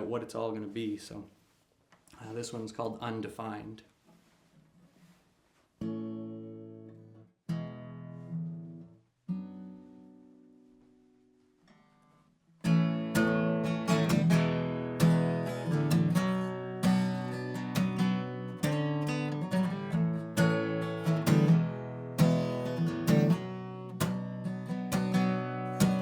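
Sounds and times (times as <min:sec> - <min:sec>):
acoustic guitar strumming: 0:05.8 - 0:10.8, 0:11.7 - 0:26.0.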